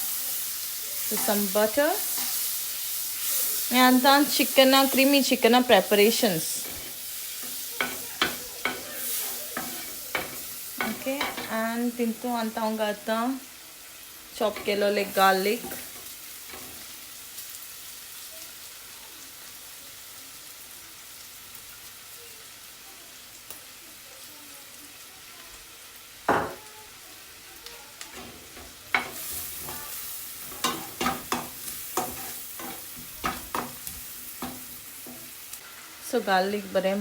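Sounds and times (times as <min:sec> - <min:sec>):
garlic sizzling in butter: 0:00.0 - 0:37.0
utensil scraping a pan: 0:28.1 - 0:35.3.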